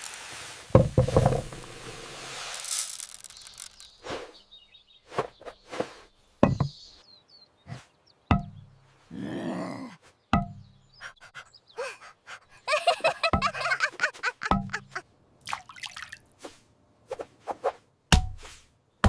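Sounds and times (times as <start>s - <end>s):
rustling: 0.0s - 4.3s
knocks and dull thuds: 0.7s - 1.6s, 6.4s - 6.8s, 8.3s - 8.8s, 10.3s - 10.8s, 18.1s - 18.5s.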